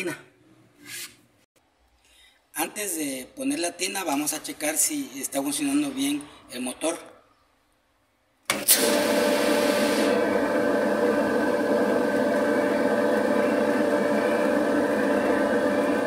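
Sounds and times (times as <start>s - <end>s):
dryer motor running: 8.5s - 16.0s.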